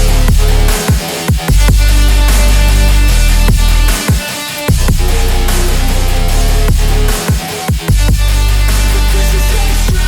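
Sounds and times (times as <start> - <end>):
bass-heavy electronic music: 0.0 - 10.0
person rapping: 7.8 - 10.0.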